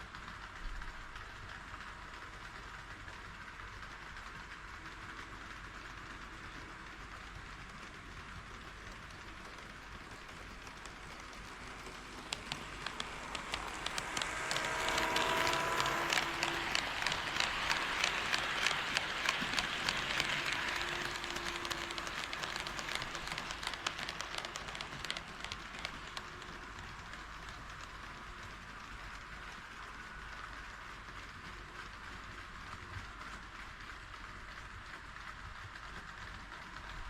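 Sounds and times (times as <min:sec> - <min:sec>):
model train rolling rumble: 0:00.0 - 0:37.0
wheels clicking over rail joints: 0:07.2 - 0:29.6.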